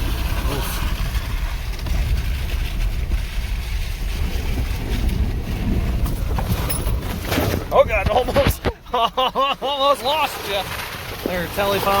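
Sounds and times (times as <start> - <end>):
wind buffeting microphone: 0.0 - 9.0
vehicle engine and tyres rumbling: 0.0 - 12.0.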